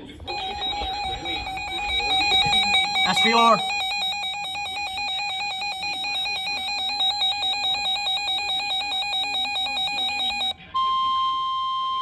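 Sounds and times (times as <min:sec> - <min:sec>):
steady high tone: 0:00.0 - 0:10.6
buzzy pulsing alarm beep: 0:00.0 - 0:12.0.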